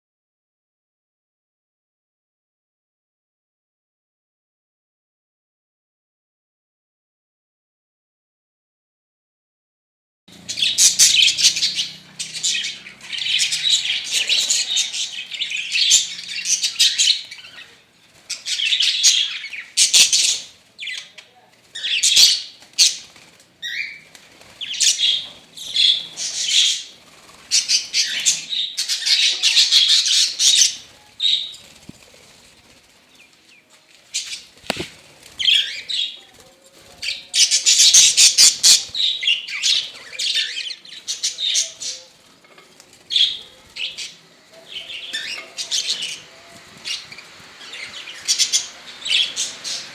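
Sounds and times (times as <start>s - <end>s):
budgies chattering and chirping: 10.3s - 49.9s.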